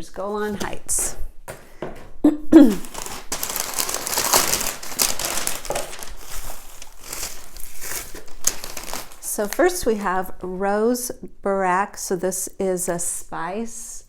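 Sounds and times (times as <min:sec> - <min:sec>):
paper packaging crinkling: 0:02.7 - 0:10.1.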